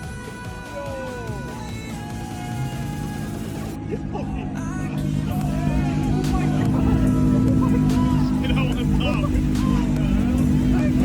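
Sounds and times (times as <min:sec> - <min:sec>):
background music with low held notes: 0:00.0 - 0:11.0.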